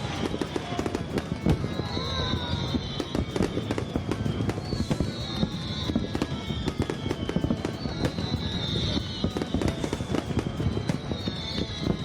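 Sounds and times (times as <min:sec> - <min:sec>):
fireworks cracking and popping: 0:00.0 - 0:12.0.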